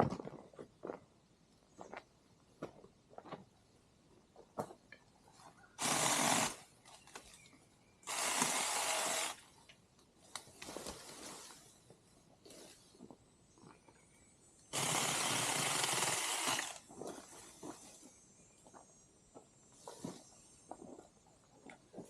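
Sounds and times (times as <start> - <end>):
mini chainsaw bursts: 5.8 - 6.6, 8.0 - 9.4, 14.7 - 16.8.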